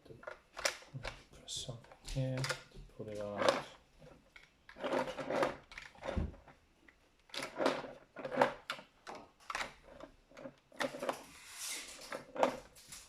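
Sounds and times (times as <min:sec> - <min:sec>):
plastic bricks clicking and rattling: 0:02.2 - 0:06.6, 0:07.3 - 0:11.3
scraping rub: 0:10.8 - 0:13.0.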